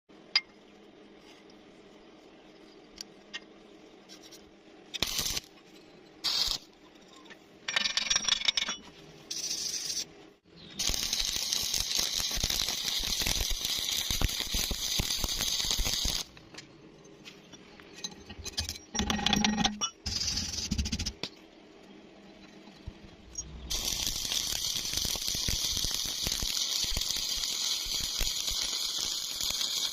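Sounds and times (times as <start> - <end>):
welding arc crackling: 4.9 - 5.5, 6.2 - 6.7, 10.8 - 16.4, 23.3 - 29.9.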